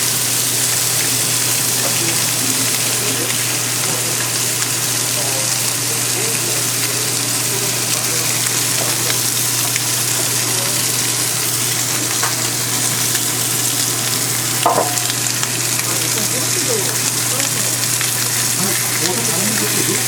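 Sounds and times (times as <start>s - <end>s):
beef sizzling: 0.0s - 20.0s
utensil knock: 14.7s - 15.2s.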